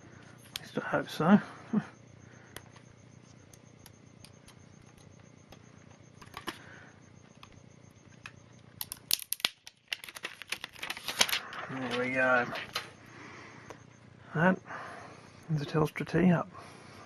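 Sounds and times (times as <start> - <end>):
plastic film crackling: 8.8 - 12.9.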